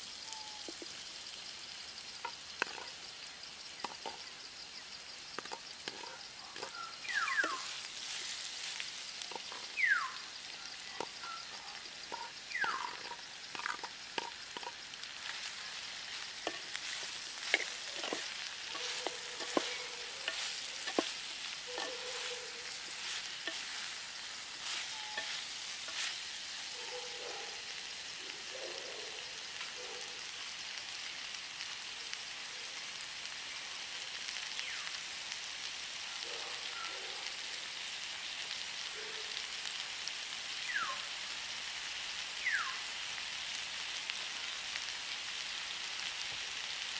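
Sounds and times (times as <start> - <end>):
food sizzling in a pan: 0.0 - 46.9
spoon knocking against pan: 17.4 - 22.3.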